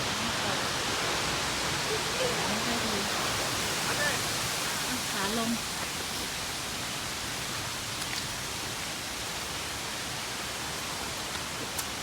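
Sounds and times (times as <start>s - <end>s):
waterfall rushing: 0.0s - 7.4s.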